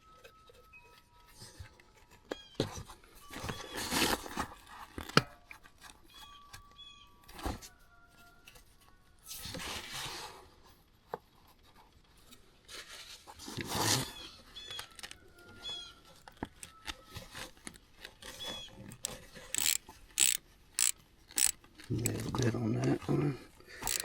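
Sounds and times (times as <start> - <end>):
sharp clicks: 18.9 - 22.2.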